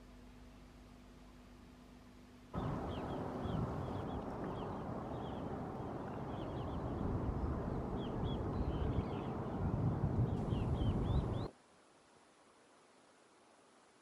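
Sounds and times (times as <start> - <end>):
shoreline rushing noise: 2.6 - 11.4
small birds chirping: 2.6 - 11.5.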